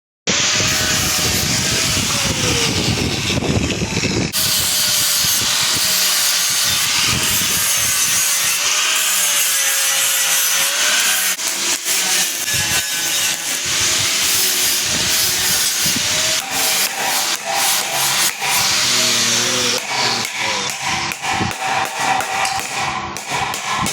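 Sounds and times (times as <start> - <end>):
harsh hiss of metalwork: 4.4 - 22.2.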